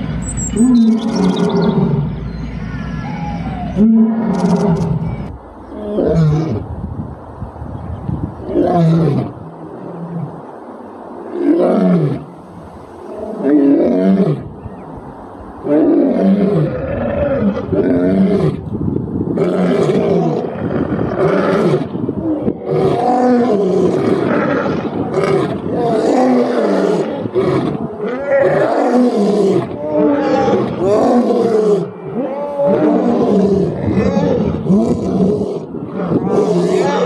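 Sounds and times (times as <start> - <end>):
lions roaring: 0.6 - 2.1, 3.4 - 6.6, 15.6 - 18.7, 19.3 - 37.0.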